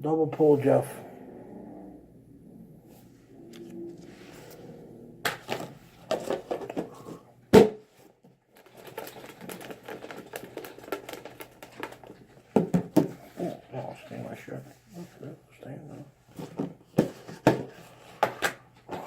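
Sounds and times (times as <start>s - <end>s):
paper tickets rustling in a container: 8.5s - 12.4s.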